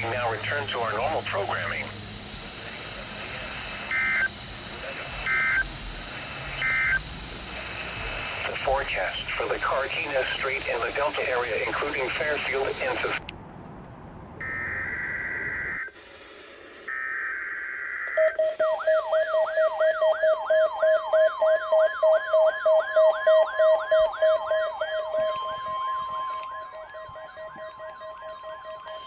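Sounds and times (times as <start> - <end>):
steady alarm tone: 0.0 - 13.0, 14.4 - 16.0, 16.7 - 29.0
pulsing beep: 3.8 - 4.4, 5.2 - 5.7, 6.4 - 7.0
rising whoop alarm: 16.9 - 29.0.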